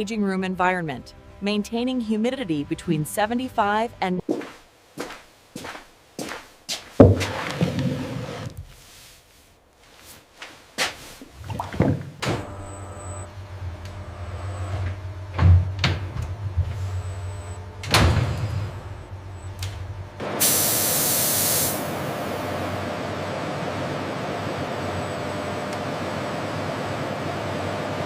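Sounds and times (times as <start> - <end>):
machine knocks and clunks: 7.0 - 8.0, 11.8 - 12.5, 14.8 - 16.8, 17.8 - 18.9
low machine hum: 11.4 - 20.5, 21.8 - 28.0
air hissing: 20.3 - 22.2.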